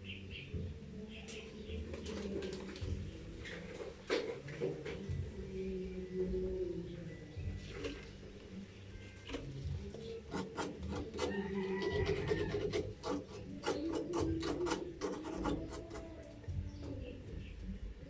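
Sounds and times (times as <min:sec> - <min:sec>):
scraping or rubbing strokes: 0:09.2 - 0:16.3.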